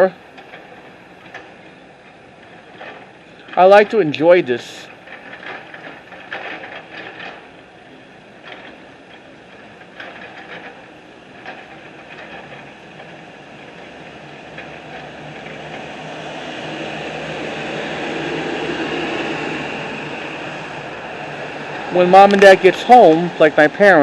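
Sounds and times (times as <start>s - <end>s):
vehicle noise: 0.0s - 24.0s.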